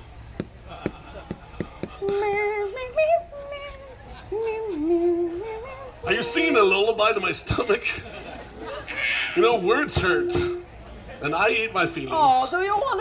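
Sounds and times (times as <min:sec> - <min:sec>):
light taps: 0:00.4 - 0:02.2.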